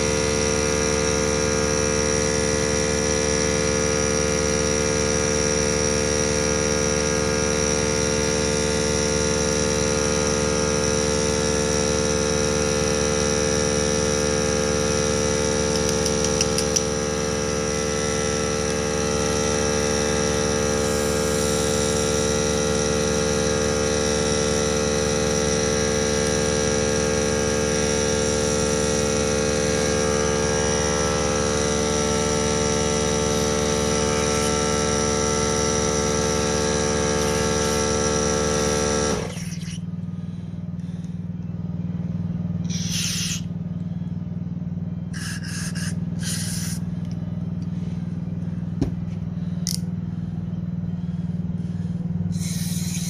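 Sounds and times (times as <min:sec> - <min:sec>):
motor running: 0:00.0 - 0:41.8, 0:42.4 - 0:44.1, 0:44.9 - 0:53.0
low hum: 0:39.1 - 0:53.0
short hissing bursts: 0:42.6 - 0:43.5, 0:45.2 - 0:46.9, 0:52.3 - 0:53.0.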